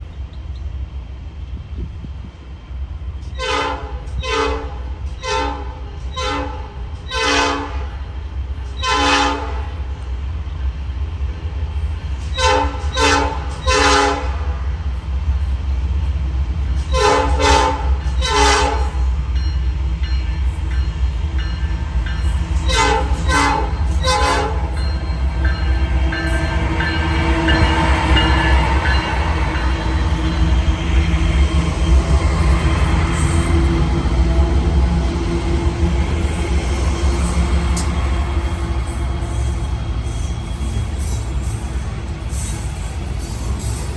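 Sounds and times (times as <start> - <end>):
diesel locomotive rumble: 0.0 - 43.9
moving train noise: 0.0 - 43.9
locomotive air horn blasts: 3.4 - 7.9, 8.8 - 9.8, 12.4 - 14.6, 17.0 - 19.1, 22.7 - 24.8.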